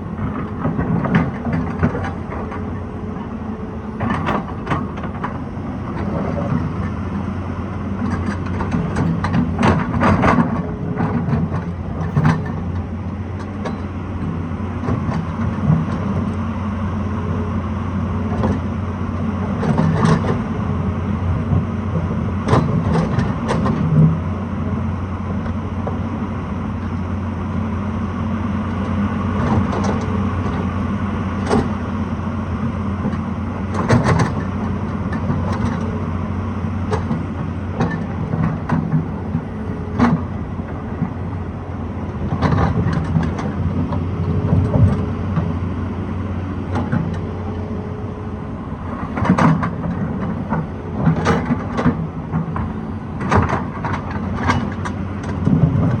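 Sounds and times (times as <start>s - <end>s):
diesel engine running: 0.0s - 56.0s
machine knocking and clanking: 0.2s - 3.3s, 8.0s - 12.8s, 21.4s - 24.2s, 31.4s - 31.8s, 33.0s - 35.9s, 36.9s - 41.2s, 42.1s - 45.6s, 46.7s - 47.6s, 48.9s - 56.0s.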